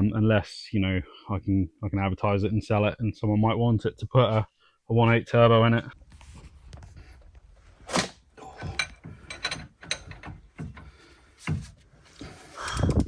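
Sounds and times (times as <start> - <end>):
tools and metal parts clinking: 8.0 - 11.7.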